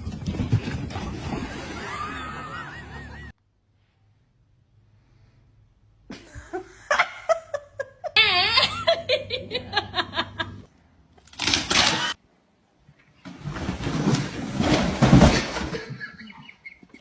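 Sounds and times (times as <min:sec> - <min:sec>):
person laughing hard: 0:01.6 - 0:03.3, 0:06.1 - 0:10.6.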